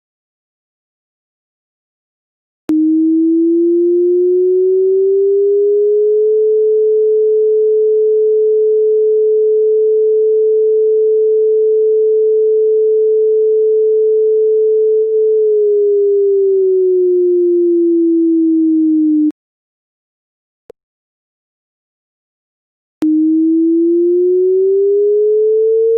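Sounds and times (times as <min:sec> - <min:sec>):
electronic siren wail: 0:02.7 - 0:19.3, 0:23.0 - 0:25.9.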